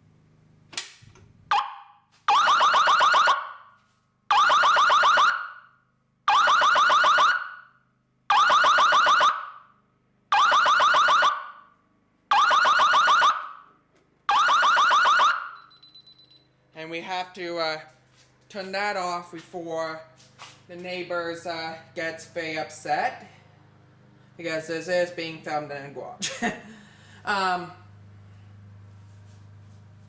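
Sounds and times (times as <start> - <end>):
fire alarm sounder blasts: 1.5 - 3.7, 4.3 - 11.7, 12.3 - 13.7, 14.3 - 16.4.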